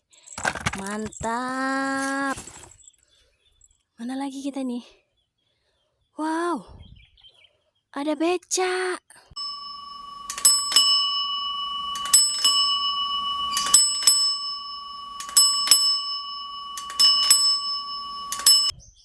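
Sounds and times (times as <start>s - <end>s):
bicycle bell ringing: 9.4s - 18.7s.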